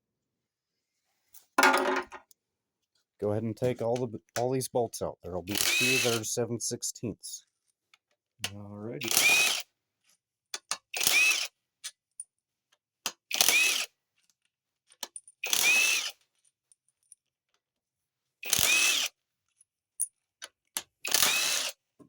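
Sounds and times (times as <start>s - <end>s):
power driver whining: 5.6s - 6.2s.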